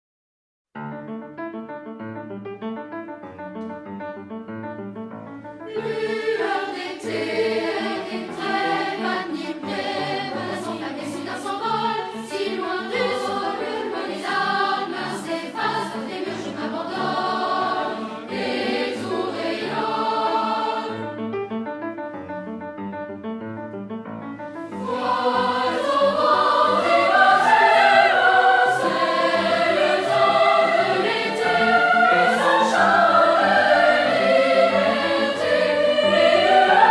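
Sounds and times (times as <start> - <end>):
keyboard accompaniment: 0.8 - 36.9
choir singing: 5.7 - 21.2, 24.7 - 36.9.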